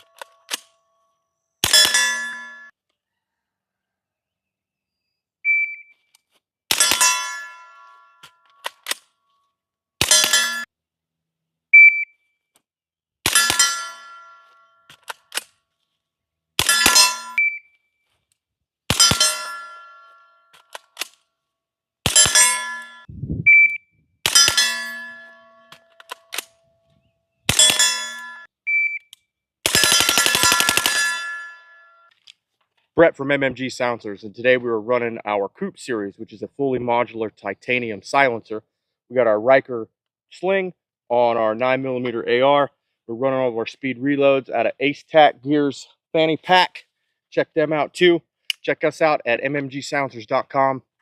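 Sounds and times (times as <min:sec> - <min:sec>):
ringing steel targets: 0:01.6 - 0:02.7, 0:06.7 - 0:08.6, 0:10.0 - 0:10.7, 0:13.3 - 0:14.9, 0:16.6 - 0:17.5, 0:18.9 - 0:20.5, 0:22.1 - 0:23.1, 0:24.3 - 0:26.4, 0:27.5 - 0:28.5, 0:29.7 - 0:32.1
shot timer beep: 0:05.5 - 0:05.9, 0:11.8 - 0:12.1, 0:17.4 - 0:17.7, 0:23.4 - 0:23.9, 0:28.7 - 0:29.1
small clicks: 0:08.4 - 0:09.5, 0:14.9 - 0:16.0, 0:20.5 - 0:21.3, 0:25.7 - 0:26.6
suppressed gunshots: 0:29.6 - 0:31.3.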